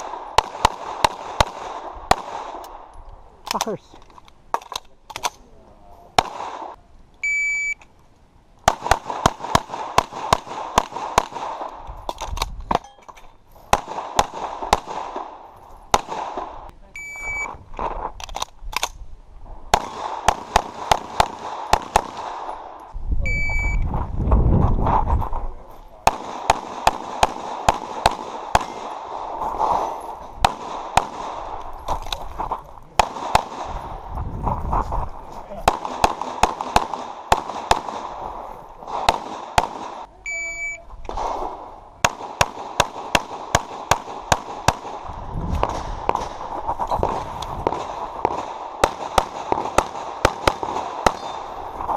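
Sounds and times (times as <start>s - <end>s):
pistol shots with ringing tail: 8.7s - 11.7s, 19.7s - 22.8s, 26.0s - 32.0s, 33.0s - 33.8s, 35.6s - 46.4s, 47.0s - 51.7s
shot timer beep: 17.0s - 17.5s, 23.3s - 23.8s, 40.3s - 40.8s.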